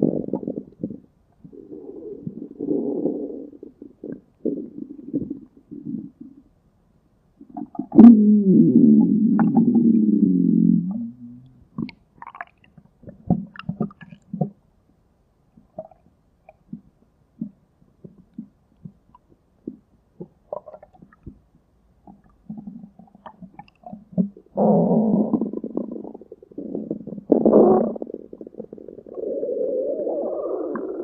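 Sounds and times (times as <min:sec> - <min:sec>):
stomach growling: 0:00.0 - 0:06.4, 0:07.4 - 0:14.6, 0:19.6 - 0:21.4, 0:22.1 - 0:31.0.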